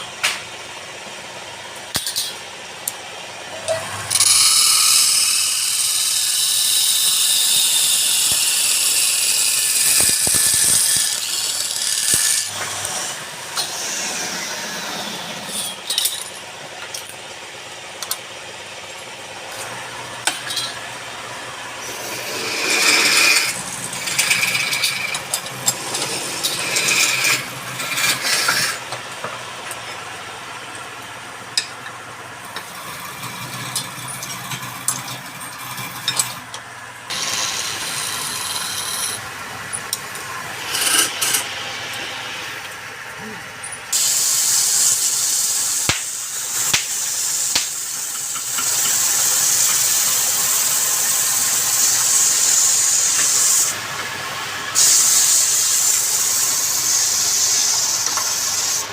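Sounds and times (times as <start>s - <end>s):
wood lathe tool cutting wood: 3.8s - 15.8s, 21.8s - 28.9s, 37.1s - 39.3s, 40.3s - 42.2s, 54.8s - 58.9s.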